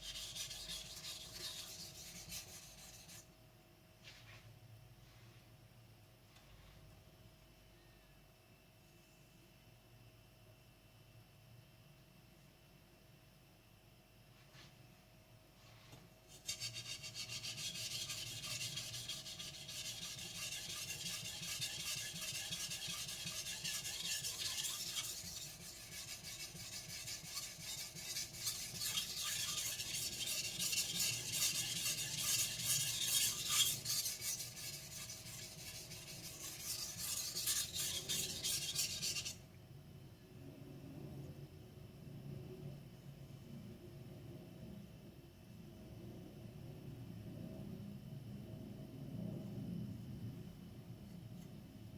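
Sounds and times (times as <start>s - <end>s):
knife scraping on whetstone: 16.4s - 39.3s.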